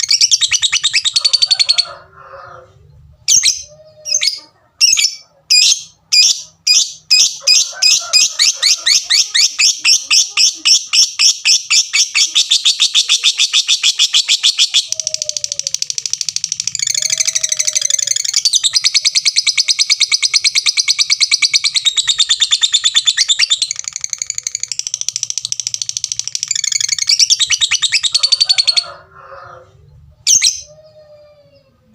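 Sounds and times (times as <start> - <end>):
lovebird clicking chatter: 8.2 - 28.8.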